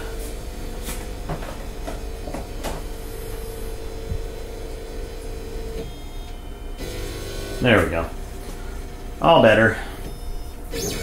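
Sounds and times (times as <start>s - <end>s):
stepper motors whining: 2.9s - 11.0s.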